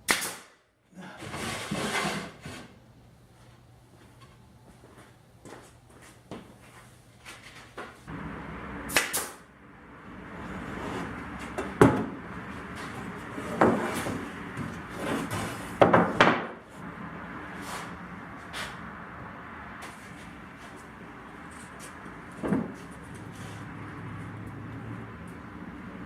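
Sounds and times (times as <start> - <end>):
steady noise: 8.1 - 11.4
sharp knocks and clunks: 11.4 - 12.2, 13.6 - 16.6, 22.4 - 22.9.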